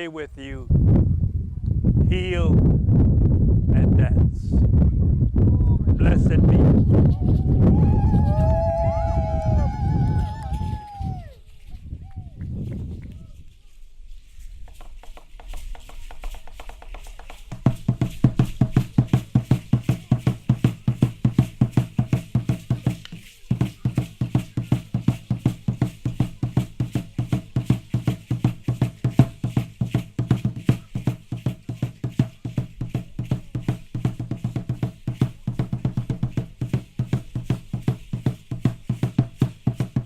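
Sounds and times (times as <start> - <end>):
drum beating fast rhythm: 15.1 - 40.0.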